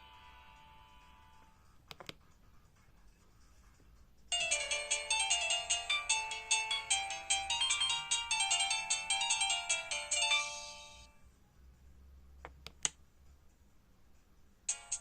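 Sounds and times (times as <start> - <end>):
phone ringtone melody: 0.0 - 1.6, 4.3 - 11.2, 14.7 - 15.0.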